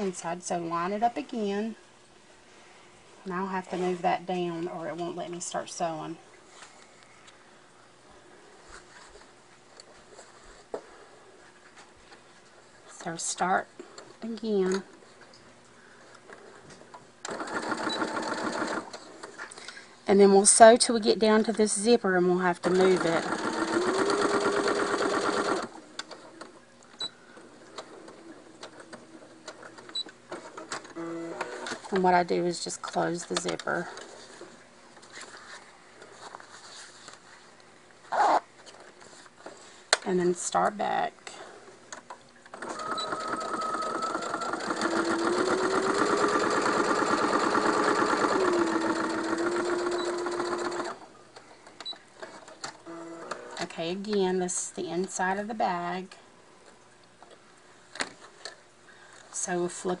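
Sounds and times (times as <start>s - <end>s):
electric sewing machine stitching: 17.3s - 19.0s, 22.6s - 25.8s, 42.5s - 51.0s.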